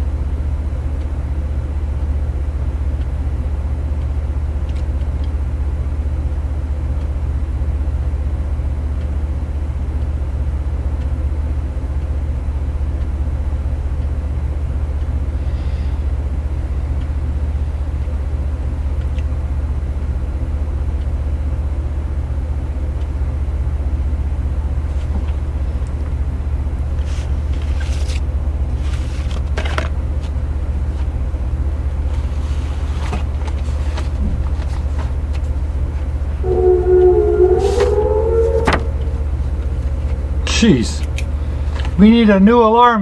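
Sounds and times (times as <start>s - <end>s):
steady low hum: 35.6s - 42.0s.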